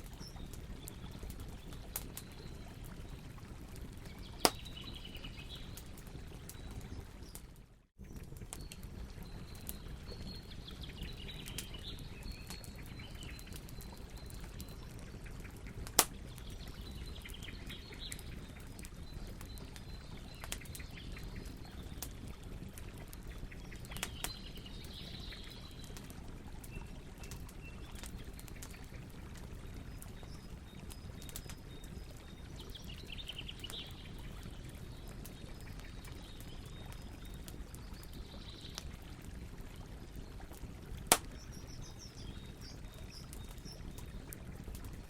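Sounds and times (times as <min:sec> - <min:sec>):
birds chirping faintly: 0:00.0 - 0:45.0
campfire crackling: 0:00.0 - 0:45.0
campfire pop: 0:04.0 - 0:23.0, 0:41.0 - 0:45.0.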